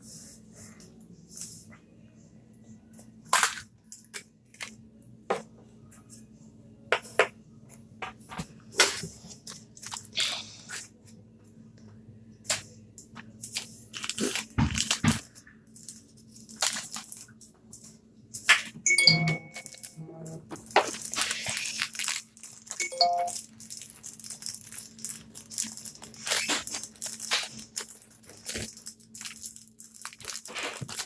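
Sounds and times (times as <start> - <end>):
plastic packaging clicking and crinkling: 8.7 - 10.4, 12.5 - 18.8, 20.5 - 31.0.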